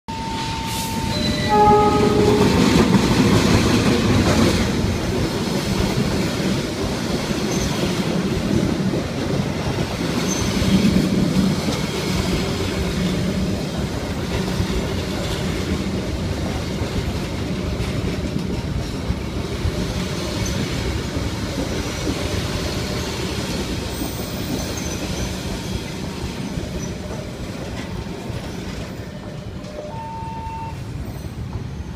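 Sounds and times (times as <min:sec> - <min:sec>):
train horn chord: 0:00.6 - 0:02.8.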